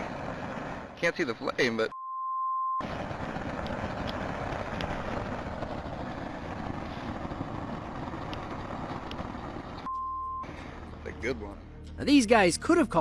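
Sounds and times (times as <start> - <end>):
gas jet burning with a rush: 0.0 - 1.7, 2.8 - 9.9
censor bleep: 1.9 - 2.8, 9.9 - 10.5.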